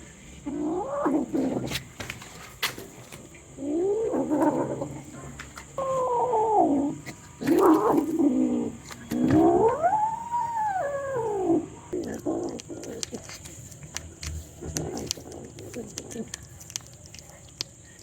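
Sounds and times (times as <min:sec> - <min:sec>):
cat yowling: 0:05.8 - 0:11.7.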